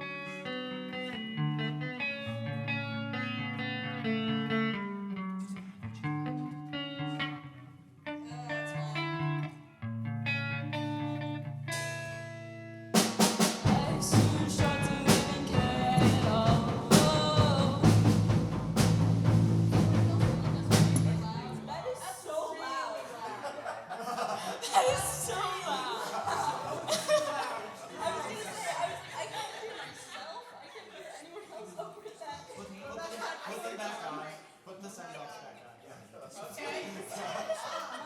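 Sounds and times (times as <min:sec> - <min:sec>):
guitar melody: 0:00.0 - 0:21.9
full band with drums and bass: 0:11.7 - 0:12.2, 0:12.9 - 0:21.8.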